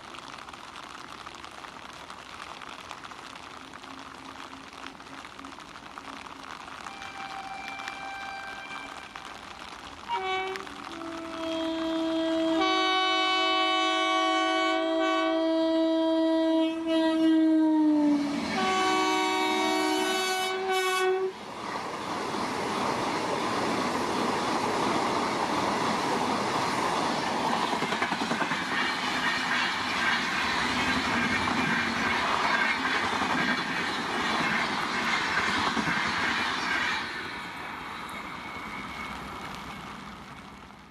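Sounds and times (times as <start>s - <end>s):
locomotive horn blast: 6.9s - 9.4s, 10.1s - 21.4s
train wheels clattering on rails: 21.6s - 40.8s.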